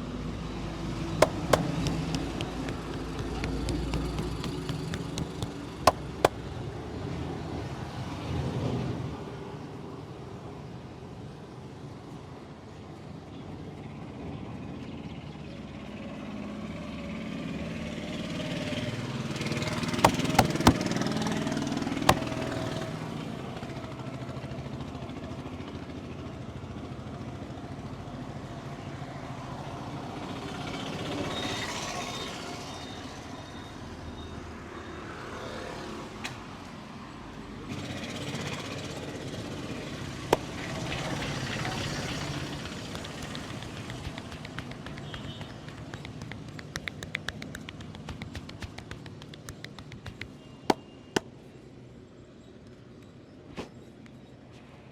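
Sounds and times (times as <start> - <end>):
street traffic passing: 0.0 - 54.9
sharp clicks: 1.2 - 6.4, 42.9 - 50.8.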